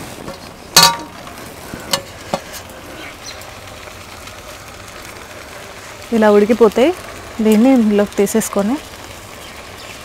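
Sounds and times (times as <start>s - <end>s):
low steady hiss: 0.0s - 10.0s
utensils clanging on cooking pot: 0.2s - 2.6s.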